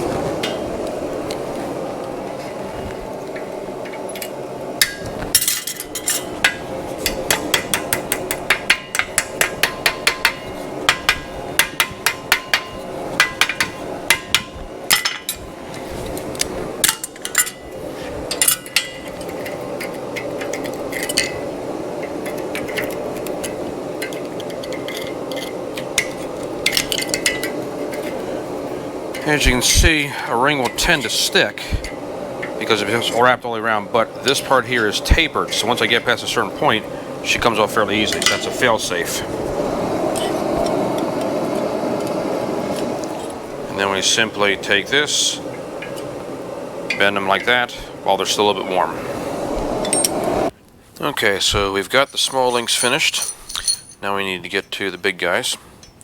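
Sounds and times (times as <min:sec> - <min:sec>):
gas forge roaring: 0:00.0 - 0:52.7
hammer striking hot steel: 0:03.2 - 0:15.5, 0:18.3 - 0:28.2, 0:34.2 - 0:39.2, 0:49.6 - 0:50.5.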